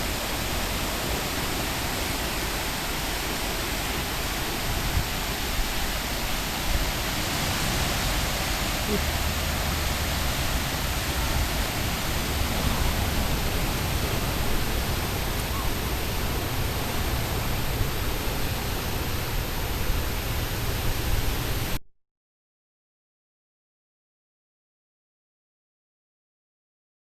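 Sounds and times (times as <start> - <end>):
wind buffeting microphone: 0.0 - 21.6.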